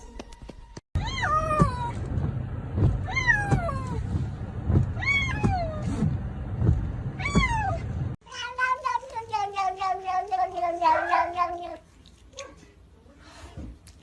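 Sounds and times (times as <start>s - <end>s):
cat meowing: 7.2s - 11.8s.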